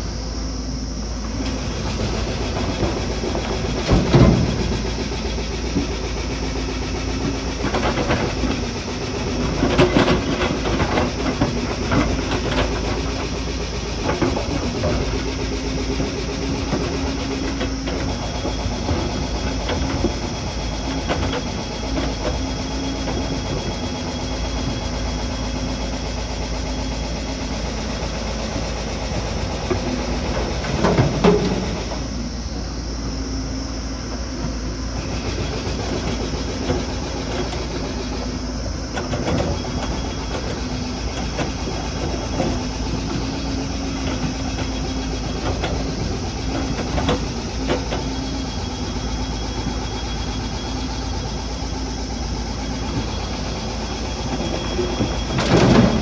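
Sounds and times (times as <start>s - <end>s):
diesel machinery running: 0.0s - 56.0s
metal clanks and knocks: 54.4s - 56.0s.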